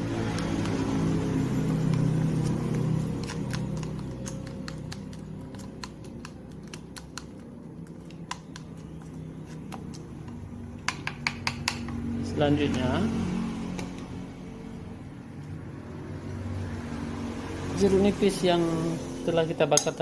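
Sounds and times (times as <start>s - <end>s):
vehicle engine droning: 0.0s - 6.5s, 11.8s - 19.8s.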